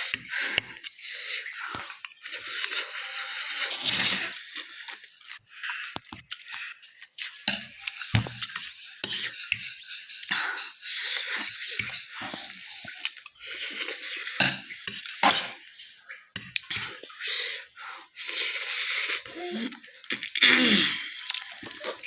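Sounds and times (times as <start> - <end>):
wet food noises: 0.0 - 22.0
cutlery clinking on a dish: 7.5 - 9.8, 14.4 - 15.6.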